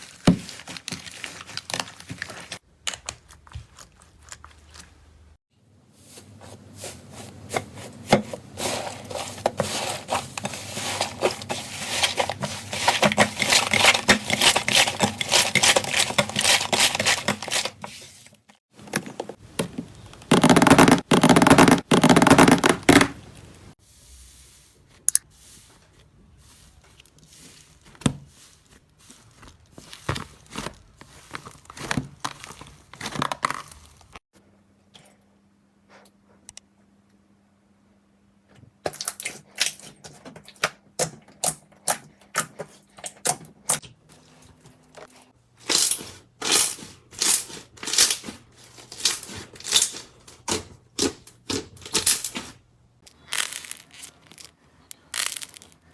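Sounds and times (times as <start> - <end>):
slime crackling and tearing: 0.0 - 4.9, 53.1 - 55.9.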